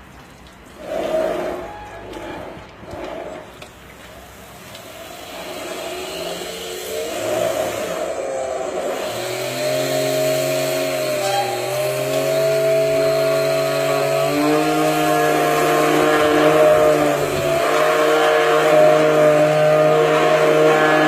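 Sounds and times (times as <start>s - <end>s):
machine motor humming: 8.7s - 21.0s.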